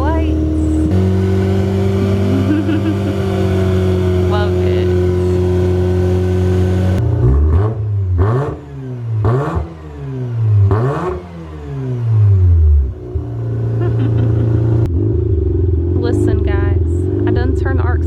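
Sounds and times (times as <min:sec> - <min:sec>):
rotary engine idle surging: 0:00.0 - 0:07.1, 0:13.0 - 0:18.0.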